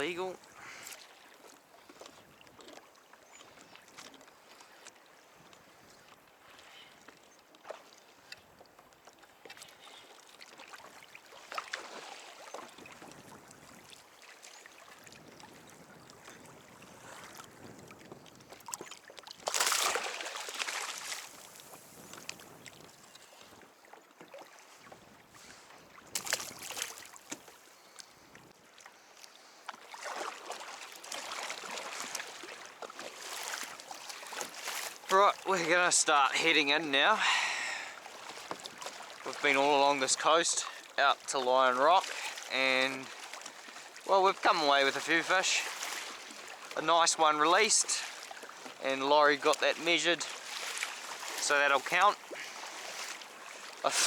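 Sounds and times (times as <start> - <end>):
water sloshing around kayak: 0.0 - 54.0
loud water splashes: 19.4 - 21.4, 50.2 - 54.0.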